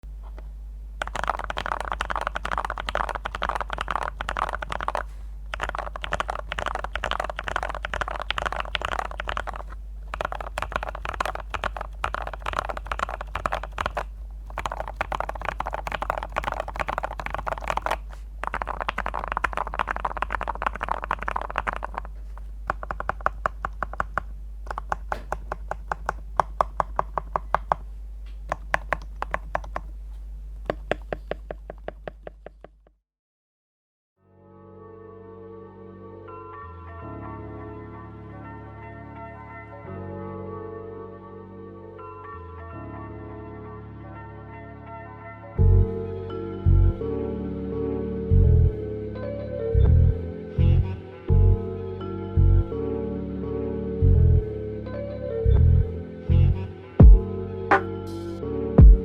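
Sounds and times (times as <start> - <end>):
mechanical keyboard typing: 1.0 - 27.8, 28.5 - 29.9, 30.6 - 32.8.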